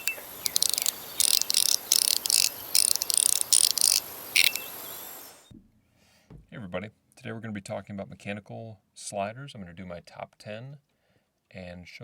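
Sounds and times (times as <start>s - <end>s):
fidget slider clicking and rattling: 0.0s - 4.7s.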